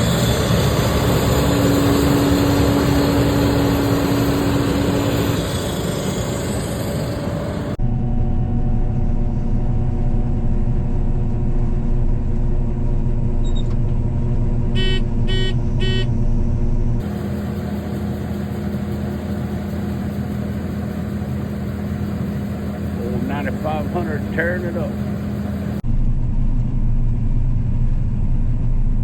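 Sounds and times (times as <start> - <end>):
combine harvester engine drone: 0.0 - 29.0
electronic warning beeps: 14.8 - 16.1.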